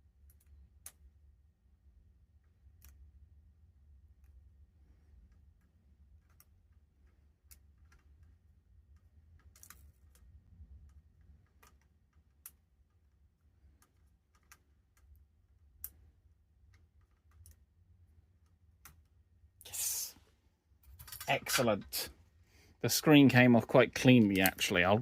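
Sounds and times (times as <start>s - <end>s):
low steady hum: 0.0s - 25.0s
brief hiss: 19.7s - 20.2s.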